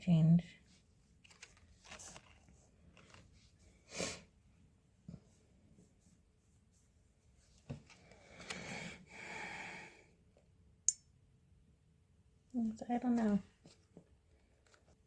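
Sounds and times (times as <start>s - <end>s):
breathy sigh: 8.3s - 10.1s.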